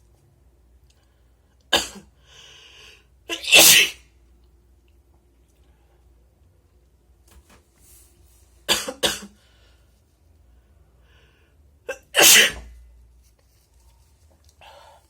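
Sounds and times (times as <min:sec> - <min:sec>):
person coughing: 0:01.8 - 0:02.1, 0:08.7 - 0:09.4, 0:11.9 - 0:12.7
faint breaths: 0:09.4 - 0:11.8, 0:14.5 - 0:15.0.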